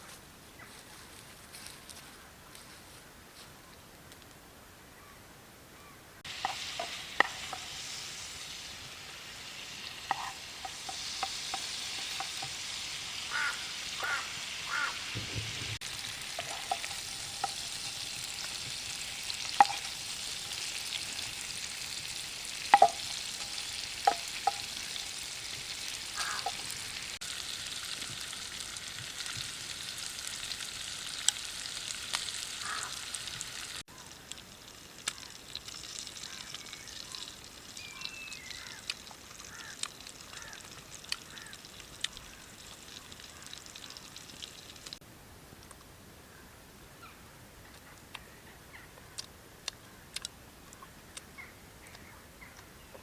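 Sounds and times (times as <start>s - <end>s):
meat sizzling in hot oil: 6.2s - 45.0s
metal utensil scraping pan: 10.0s - 12.8s, 15.1s - 21.4s.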